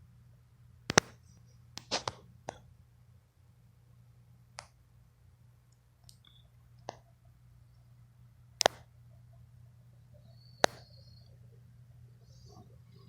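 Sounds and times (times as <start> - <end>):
low hum: 0.0 - 13.0
sharp clicks or pops: 0.9 - 2.6, 8.6 - 8.9, 10.6 - 11.0.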